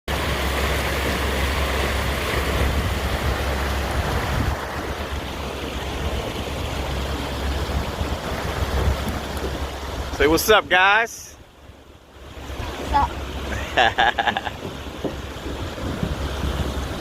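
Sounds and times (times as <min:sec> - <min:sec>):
rushing water: 0:00.1 - 0:17.0
wind buffeting microphone: 0:01.0 - 0:10.7, 0:14.4 - 0:17.0.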